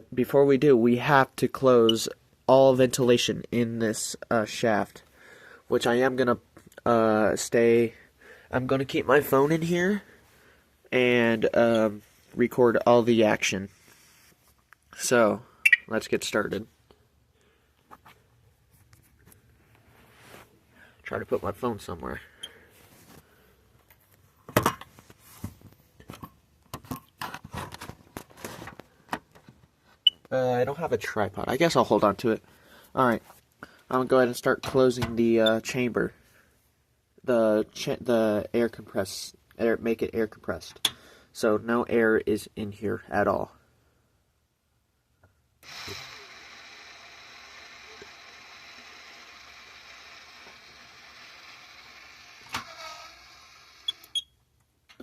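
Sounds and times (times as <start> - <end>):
electric air pump whirring: 45.6 - 54.2.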